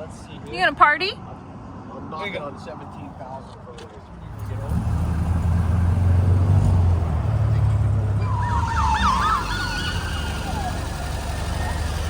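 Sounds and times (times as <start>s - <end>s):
low vehicle rumble: 4.2s - 12.0s
siren yelping: 8.2s - 12.0s.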